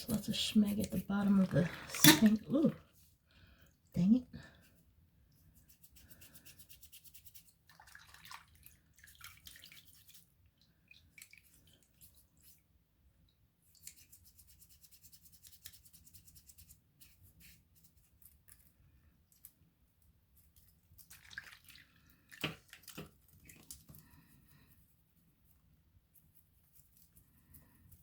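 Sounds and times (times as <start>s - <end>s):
paintbrush bristles scrubbing metal: 0.0s - 2.6s.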